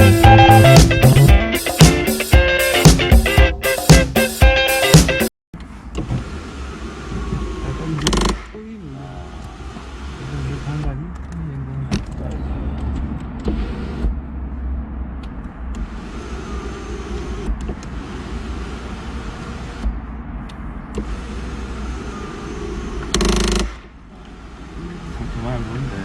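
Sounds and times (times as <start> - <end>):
sunroof motor whine: 5.8 - 8.3
loud burst of noise: 6.2 - 8.6.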